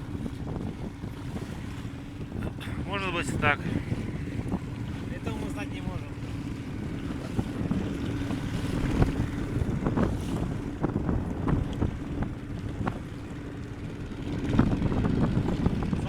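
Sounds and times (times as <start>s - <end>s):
hull slapping against waves: 0.0s - 16.0s
motorboat motor hum: 0.0s - 16.0s
wind buffeting microphone: 0.0s - 16.0s.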